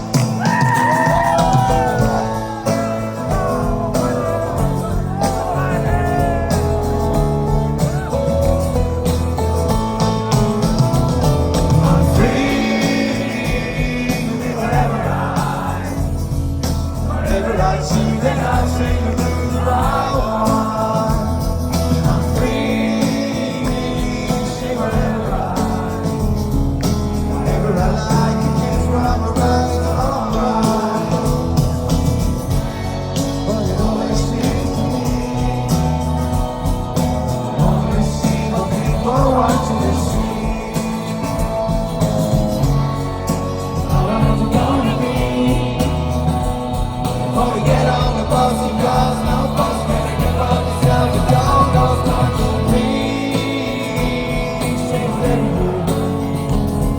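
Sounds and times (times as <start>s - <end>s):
live rock band: 0.0s - 56.9s
person singing: 10.7s - 42.4s, 43.6s - 56.9s.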